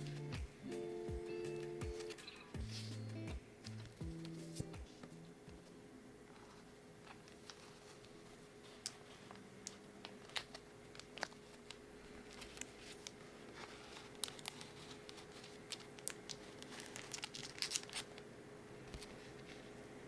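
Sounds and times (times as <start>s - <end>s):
faint steady hum: 0.0s - 20.0s
foil wrappers crinkling: 8.8s - 18.2s.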